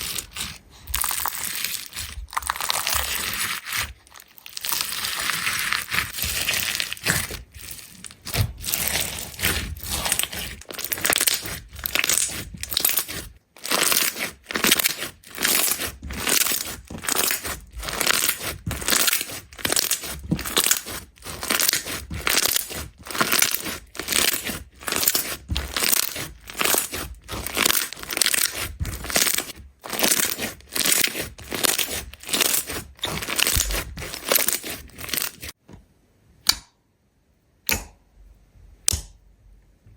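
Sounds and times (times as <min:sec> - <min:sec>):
slime squishing and crackling: 0:00.0 - 0:35.6.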